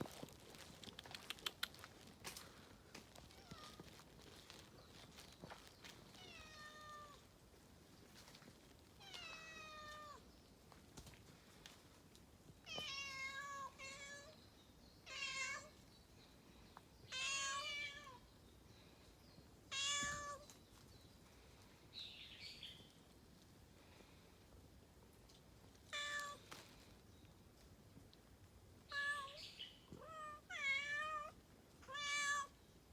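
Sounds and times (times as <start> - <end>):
cat meowing: 6.2 - 7.2, 28.9 - 32.5.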